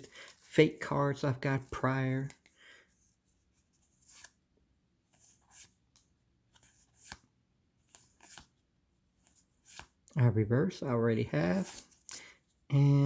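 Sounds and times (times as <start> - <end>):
trading cards flicked and rustled: 5.2 - 8.6, 9.2 - 10.1.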